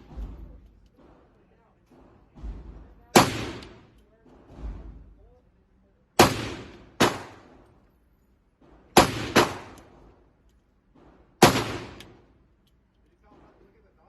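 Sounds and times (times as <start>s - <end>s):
gunshots with echo: 0.0s - 5.2s, 6.2s - 7.7s, 8.6s - 10.2s, 11.0s - 12.3s.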